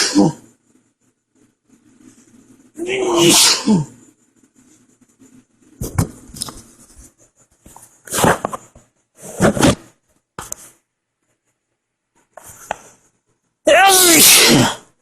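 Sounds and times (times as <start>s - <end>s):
man sneezing: 3.0s - 4.0s, 13.8s - 14.9s.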